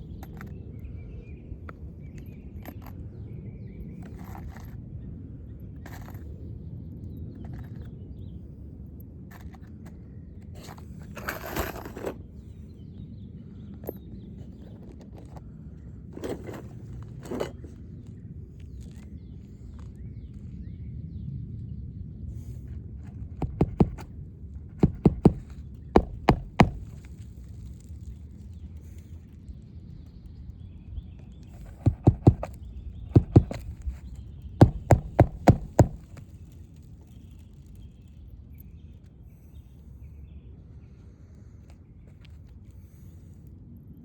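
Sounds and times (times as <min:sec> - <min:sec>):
hammer driving nails into shingle: 0:23.4 - 0:24.1, 0:24.8 - 0:27.1, 0:31.6 - 0:33.8, 0:34.6 - 0:36.2.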